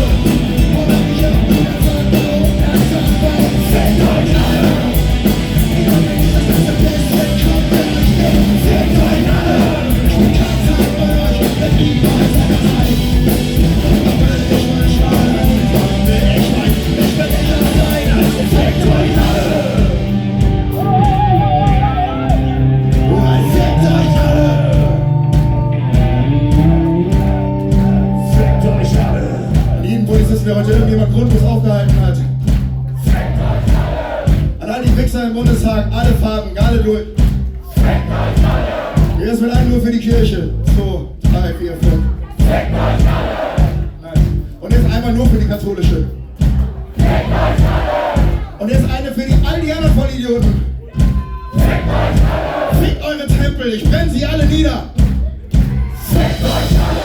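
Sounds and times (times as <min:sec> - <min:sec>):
person singing: 0:00.0 - 0:32.4
distorted electric guitars: 0:00.0 - 0:35.0, 0:49.3 - 0:57.0
drums: 0:00.0 - 0:57.0
steady bass: 0:00.0 - 0:57.0.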